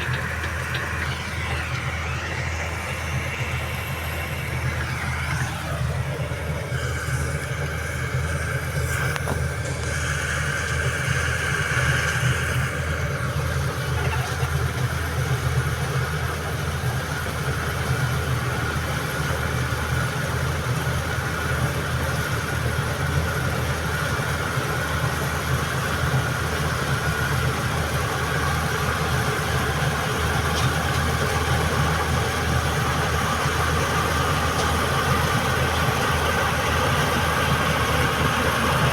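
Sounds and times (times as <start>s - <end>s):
high-pitched whine: 0.0s - 15.4s
combine harvester engine drone: 0.0s - 38.9s.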